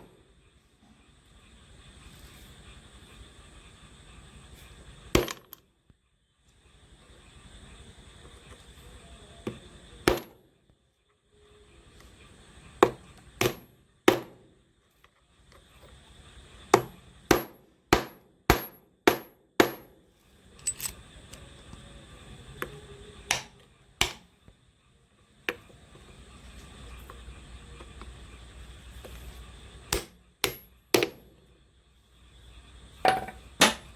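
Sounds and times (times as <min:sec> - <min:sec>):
hammer striking metal: 0:33.0 - 0:33.9.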